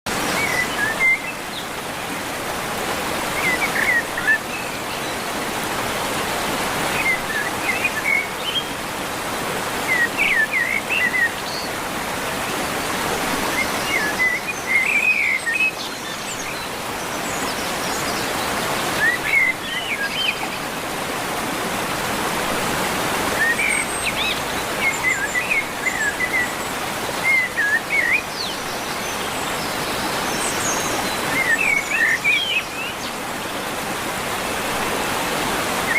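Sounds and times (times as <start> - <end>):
rushing water: 0.1 - 35.9.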